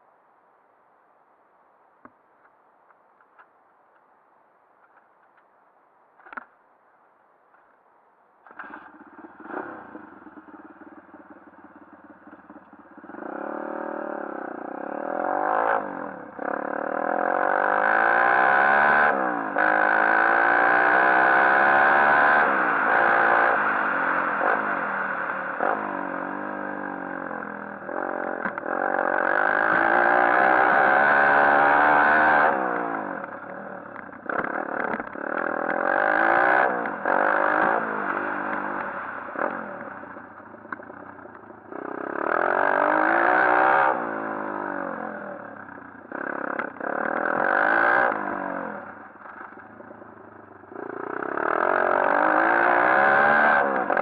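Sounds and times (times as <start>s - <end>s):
motorcycle engine revving: 8.4s - 54.0s.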